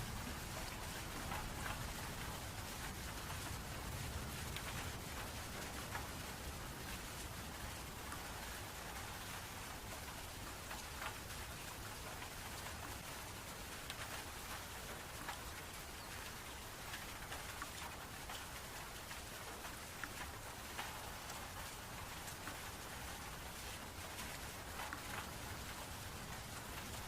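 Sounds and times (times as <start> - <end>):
steady rain: 0.0 - 27.0.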